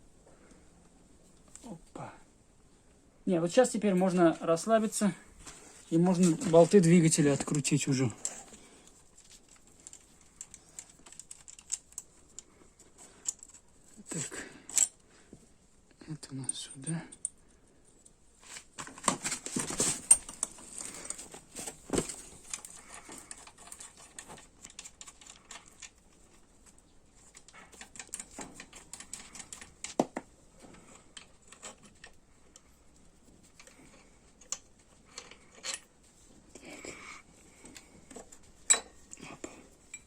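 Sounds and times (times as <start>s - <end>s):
metal tools and bolts clinking: 13.2s - 15.0s, 16.2s - 17.4s, 19.5s - 26.3s, 33.5s - 35.9s, 37.6s - 40.0s.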